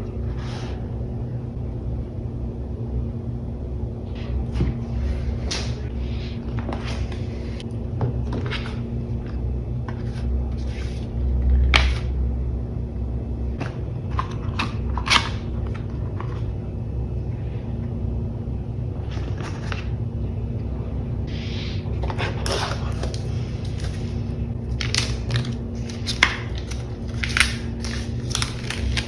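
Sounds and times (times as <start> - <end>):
steady low hum: 0.0 - 29.0
packaging being handled: 21.9 - 29.0.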